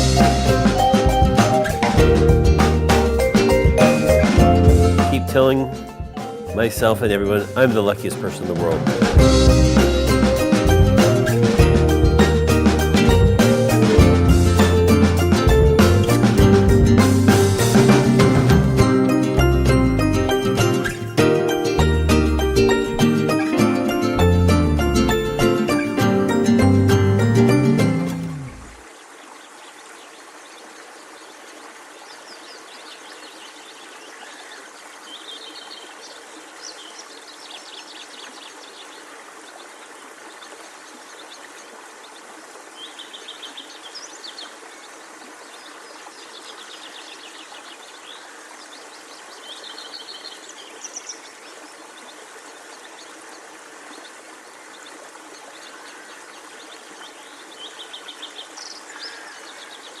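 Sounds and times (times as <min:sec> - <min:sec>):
songbird singing: 0:00.0 - 0:18.7, 0:32.0 - 1:00.0.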